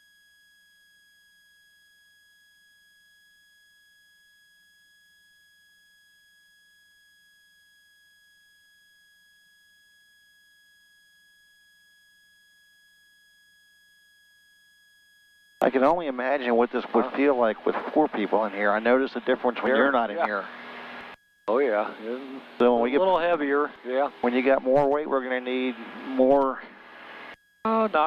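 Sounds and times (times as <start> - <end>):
high-pitched electrical tone: 15.6 - 28.0.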